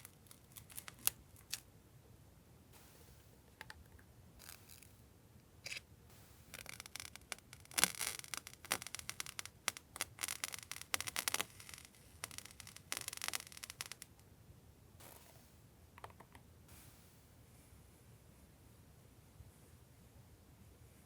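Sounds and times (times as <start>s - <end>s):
paper packaging crinkling: 0.0s - 1.6s, 6.5s - 14.1s.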